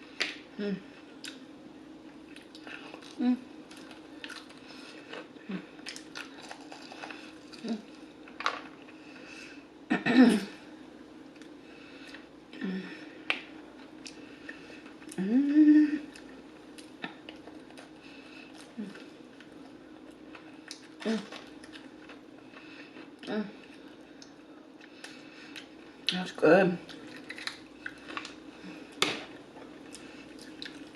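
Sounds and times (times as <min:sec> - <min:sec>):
person humming murmurs: 0:00.5 - 0:00.9, 0:03.2 - 0:03.5, 0:07.6 - 0:07.9, 0:15.1 - 0:16.1, 0:18.8 - 0:19.0, 0:21.0 - 0:21.4, 0:23.2 - 0:23.6
chewing crispy fried chicken: 0:02.2 - 0:08.9, 0:16.0 - 0:25.8.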